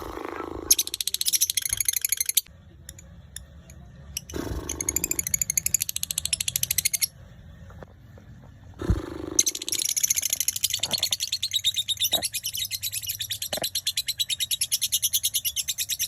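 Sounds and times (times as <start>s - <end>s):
lovebird chattering trill: 0.6s - 3.0s, 9.4s - 16.0s.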